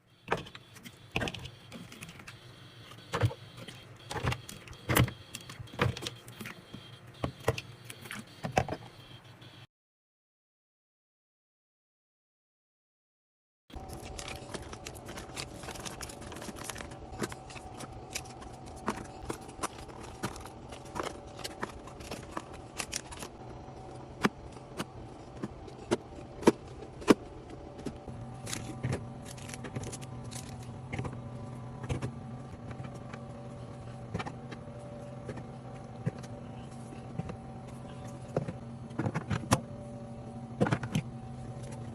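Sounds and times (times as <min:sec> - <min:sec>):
steady low hum: 0:00.0 - 0:09.6, 0:13.8 - 0:41.9.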